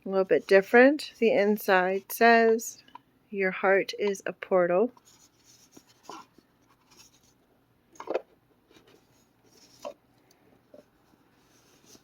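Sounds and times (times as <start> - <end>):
cardboard rubbing and rustling: 5.0 - 7.4, 11.1 - 12.0.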